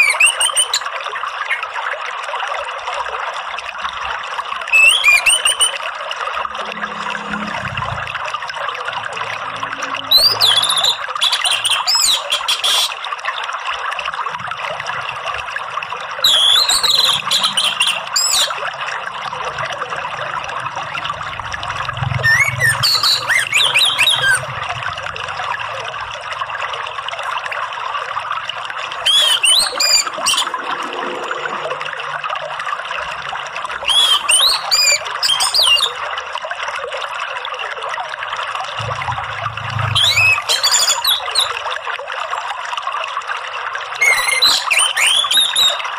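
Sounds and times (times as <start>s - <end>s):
water trickling: 0.0s - 45.9s
thrush singing warbling phrases: 38.8s - 41.6s.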